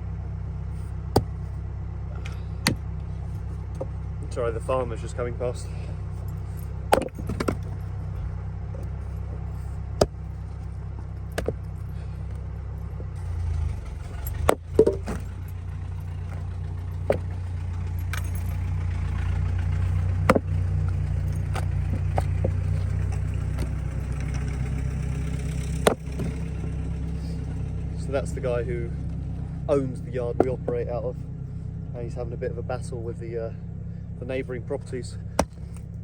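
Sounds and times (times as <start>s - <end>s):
farm vehicle engine running: 0.0s - 36.0s
sharp knocks: 20.3s - 20.6s.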